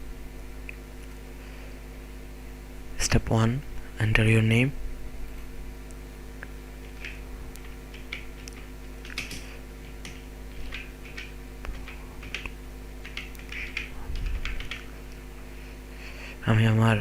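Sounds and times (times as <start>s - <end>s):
steady low hum: 0.0s - 17.0s
typing on a computer keyboard: 6.8s - 15.0s.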